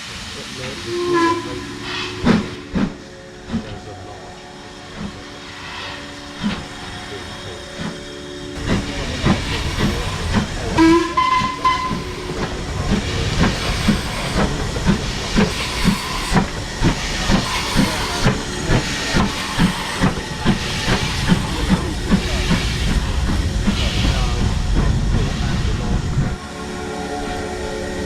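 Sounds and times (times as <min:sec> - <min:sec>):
steam hiss: 0:00.0 - 0:27.7
steam locomotive exhaust beats: 0:00.0 - 0:28.0
locomotive whistle: 0:00.7 - 0:03.6, 0:05.3 - 0:22.9.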